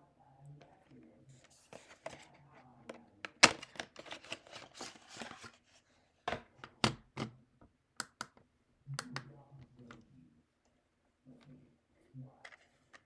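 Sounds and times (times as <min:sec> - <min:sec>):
packaging rustling: 0:03.3 - 0:05.7
plastic snaps and clicks: 0:08.0 - 0:08.4.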